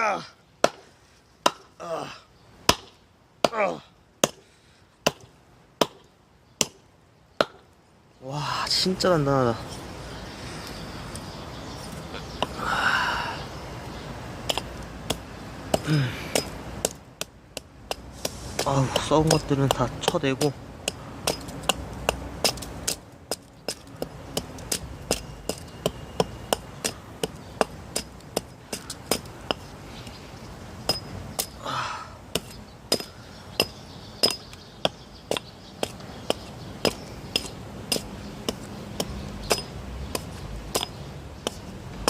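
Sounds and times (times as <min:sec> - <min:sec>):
hatchet striking a log: 0:00.6 - 0:01.7, 0:02.7 - 0:04.4, 0:05.0 - 0:06.8, 0:07.4 - 0:07.7, 0:14.4 - 0:29.6, 0:30.8 - 0:31.6, 0:32.3 - 0:42.0.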